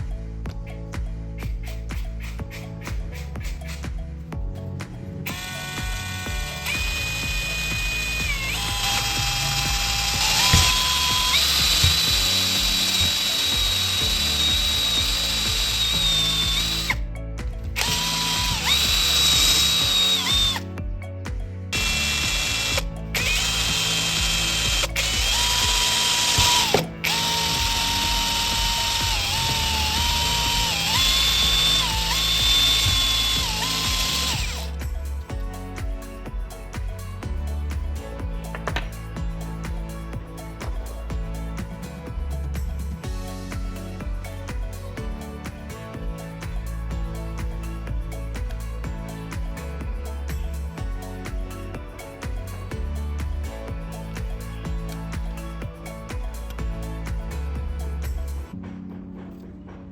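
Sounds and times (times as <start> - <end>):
background music: 0.0 - 59.9
electric drill whining: 5.3 - 17.0, 17.8 - 20.6, 21.8 - 34.8.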